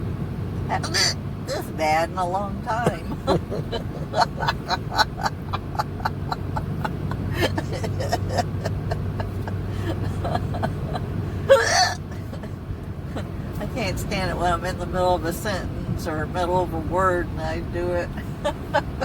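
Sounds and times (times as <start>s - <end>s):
car moving hum: 0.0s - 19.0s
person hiccuping: 7.4s - 9.3s, 10.1s - 12.5s.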